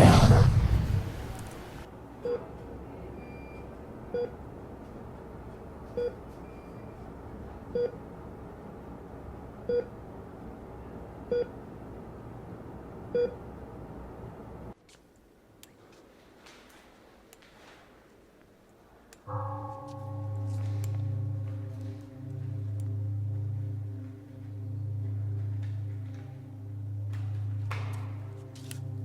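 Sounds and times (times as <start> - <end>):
steady hum: 0.0 - 1.9, 19.3 - 29.0.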